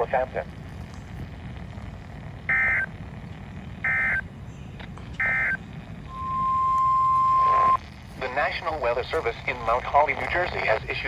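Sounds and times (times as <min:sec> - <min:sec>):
radio hiss: 0:00.0 - 0:11.0
digital data tone bursts: 0:02.5 - 0:02.9, 0:03.8 - 0:04.2, 0:05.2 - 0:07.8
steady single tone: 0:05.2 - 0:07.8.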